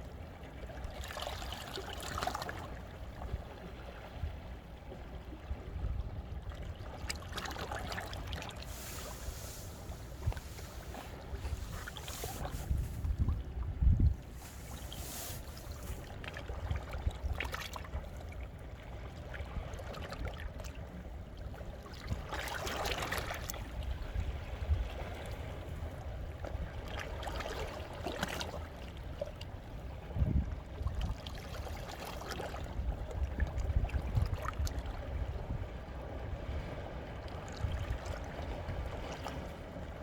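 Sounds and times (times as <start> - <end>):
sea waves washing on rocks: 7.2 - 17.8
water trickling between stones: 7.7 - 13.4, 14.1 - 16.3.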